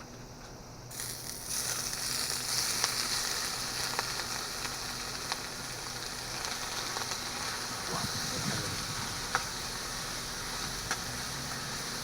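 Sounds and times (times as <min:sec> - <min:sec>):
food sizzling in a pan: 0:00.9 - 0:12.0
small pops: 0:10.6 - 0:11.2.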